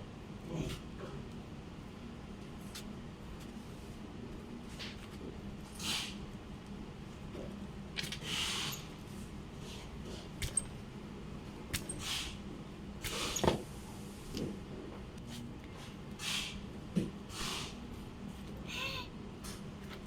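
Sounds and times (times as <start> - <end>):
small parts clicking and rustling: 8.0 - 8.9.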